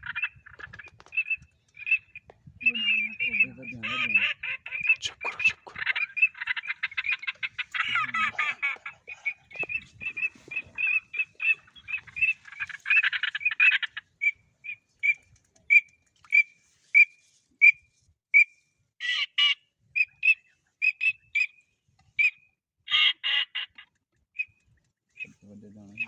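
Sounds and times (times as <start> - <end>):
birds chattering: 0.0 - 15.2, 25.2 - 26.0
repeated short bird call: 0.0 - 17.8.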